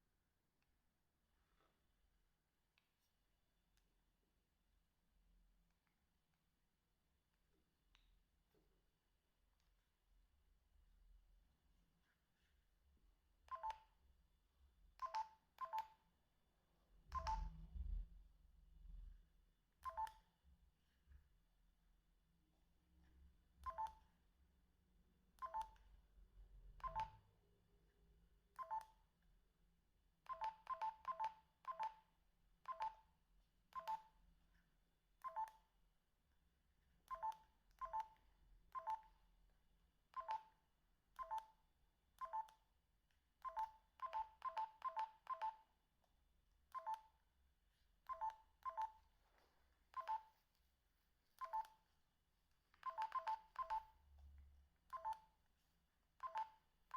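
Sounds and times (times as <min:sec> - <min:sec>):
phone keypad beeps: 0:13.5 - 0:13.9, 0:15.0 - 0:16.0, 0:17.2 - 0:17.5, 0:19.8 - 0:20.2, 0:23.6 - 0:24.0, 0:25.4 - 0:25.8, 0:26.8 - 0:27.2, 0:28.6 - 0:29.0, 0:30.3 - 0:32.0, 0:32.7 - 0:33.1, 0:33.7 - 0:34.1, 0:35.2 - 0:35.6, 0:37.1 - 0:38.2, 0:38.8 - 0:39.1, 0:40.2 - 0:40.6, 0:41.2 - 0:41.6, 0:42.2 - 0:42.6, 0:43.4 - 0:45.7, 0:46.8 - 0:47.1, 0:48.1 - 0:49.0, 0:49.9 - 0:50.3, 0:51.4 - 0:51.8, 0:52.8 - 0:54.0, 0:54.9 - 0:55.3, 0:56.2 - 0:56.6.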